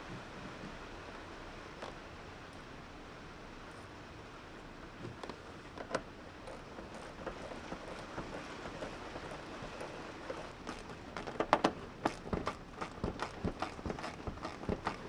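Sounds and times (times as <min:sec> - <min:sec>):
light knocks and clicks: 0:05.0 - 0:15.0.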